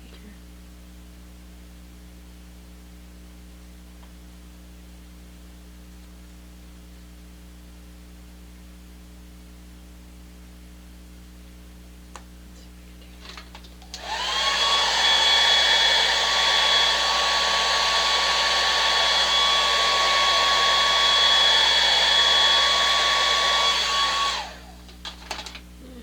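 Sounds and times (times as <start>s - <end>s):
electric blower whine and hiss: 13.9s - 25.3s.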